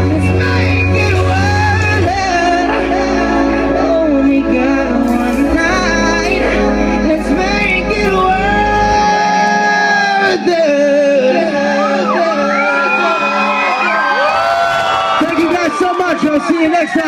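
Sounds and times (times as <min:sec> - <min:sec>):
deep bass: 0:00.0 - 0:12.7
live band playing: 0:00.0 - 0:17.0.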